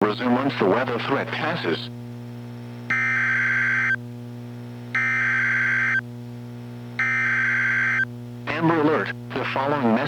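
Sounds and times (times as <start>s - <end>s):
screeching digital data tones: 2.9s - 4.0s, 5.0s - 6.0s, 7.0s - 8.0s.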